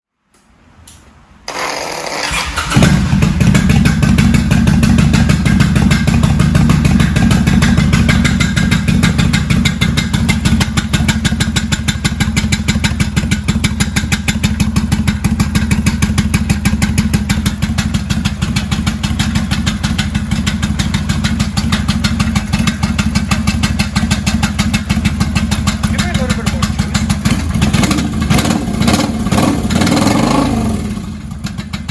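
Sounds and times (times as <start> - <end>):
motorcycle starter cranking: 1.5 - 6.2
motorcycle engine idling: 1.5 - 31.9.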